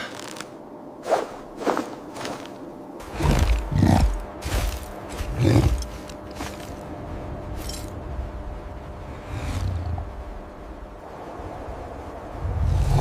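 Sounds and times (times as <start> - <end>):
low music drone: 2.8 - 13.0
deep animal growls: 3.0 - 6.1.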